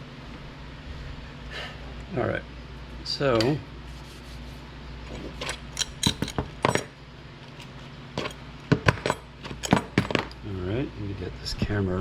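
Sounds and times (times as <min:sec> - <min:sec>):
metal chains clinking and rattling: 0:05.4 - 0:06.9, 0:09.0 - 0:10.3.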